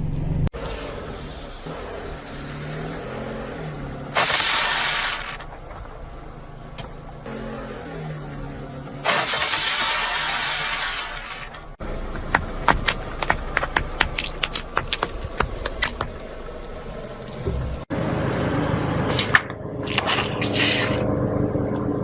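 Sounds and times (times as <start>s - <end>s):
car engine running: 0.0s - 22.0s
tyre crushing object: 12.0s - 16.3s.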